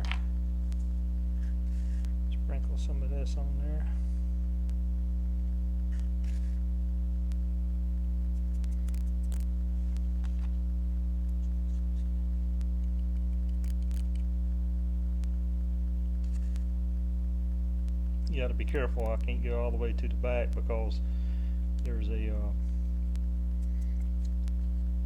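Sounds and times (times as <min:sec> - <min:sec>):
faint small clicks and scratches: 0:00.0 - 0:03.3, 0:05.8 - 0:07.5, 0:08.1 - 0:15.4, 0:16.0 - 0:17.0, 0:21.7 - 0:25.0
electrical mains hum: 0:00.0 - 0:25.0.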